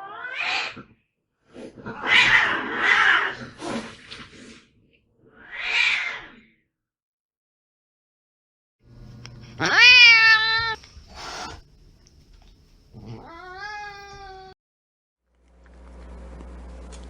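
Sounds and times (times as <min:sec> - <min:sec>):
cat yowling: 0:00.0 - 0:00.8, 0:02.0 - 0:03.4, 0:05.4 - 0:06.4, 0:09.6 - 0:11.5, 0:13.0 - 0:14.6
cat hissing: 0:00.2 - 0:00.9, 0:01.6 - 0:04.6, 0:09.4 - 0:11.6, 0:12.9 - 0:14.6.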